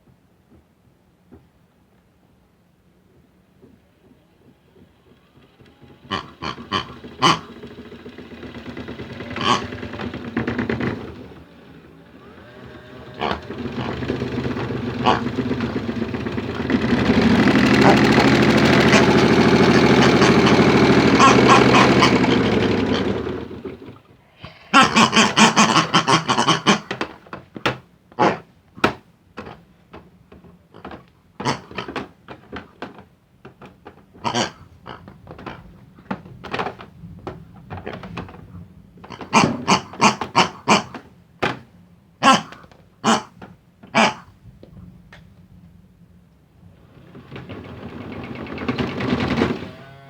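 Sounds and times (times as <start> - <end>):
small electric motor humming: 5.5 - 23.8, 48.4 - 50.0
clicks knocks and rattles: 28.8 - 34.2, 35.0 - 41.7.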